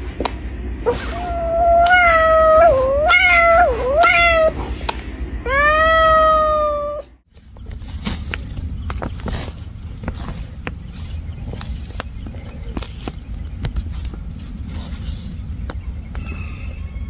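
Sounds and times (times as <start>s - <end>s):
cat yowling: 0.9s - 4.6s, 5.5s - 7.2s
scuffing and clicks: 7.3s - 16.8s.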